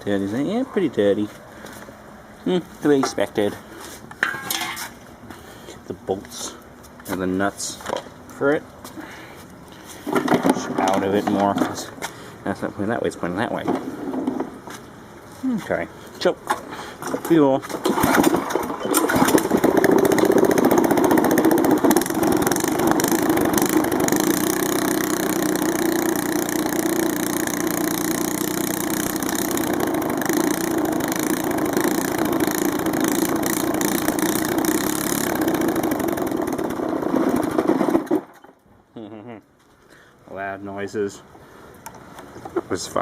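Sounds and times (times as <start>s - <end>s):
small engine with open exhaust: 17.0s - 38.5s.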